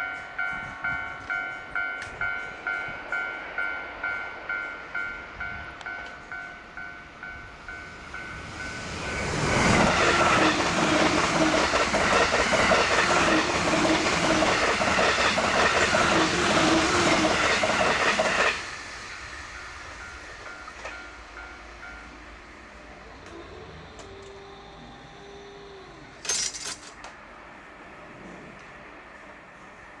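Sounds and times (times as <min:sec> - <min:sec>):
train wheels clacking over rail joints: 0:09.5 - 0:18.6.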